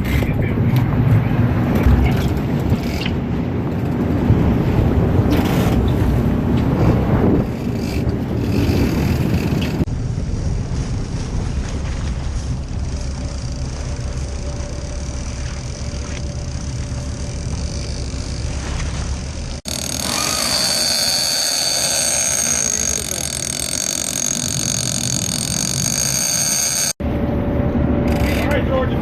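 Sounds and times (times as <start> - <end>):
wind noise on microphone: 0.0 - 13.8
boat engine running: 0.0 - 29.0.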